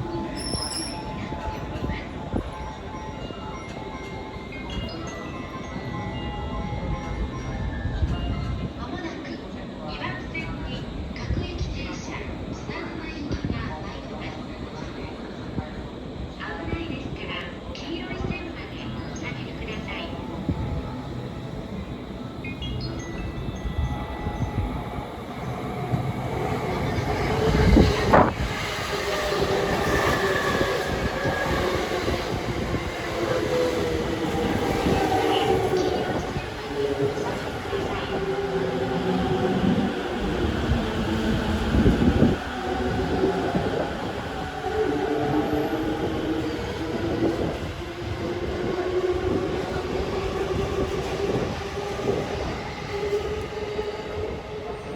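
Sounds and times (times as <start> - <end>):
train wheel-on-rail noise: 0.0 - 54.9.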